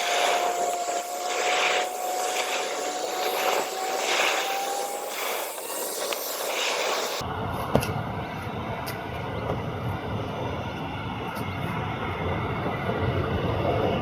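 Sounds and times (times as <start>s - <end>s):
broad rushing noise: 0.0s - 7.3s
airliner engine whine: 0.0s - 14.0s.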